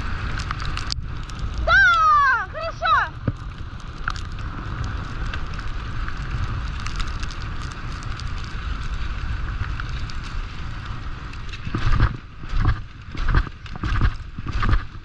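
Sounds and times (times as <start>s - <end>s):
small ticks: 0.0s - 2.1s, 3.2s - 11.6s
wind buffeting microphone: 0.0s - 15.0s.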